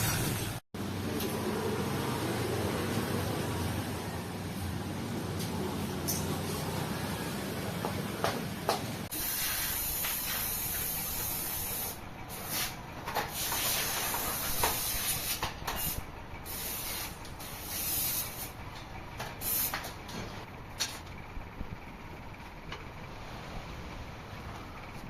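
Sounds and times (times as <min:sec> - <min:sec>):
low workshop rumble: 0:00.0 - 0:25.0
strong hissing spray: 0:09.1 - 0:12.8.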